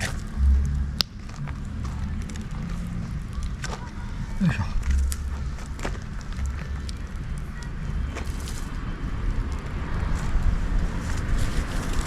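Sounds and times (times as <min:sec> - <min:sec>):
wood bonfire crackling: 0:00.0 - 0:03.9, 0:04.6 - 0:12.0
steady low rumble: 0:00.0 - 0:08.2.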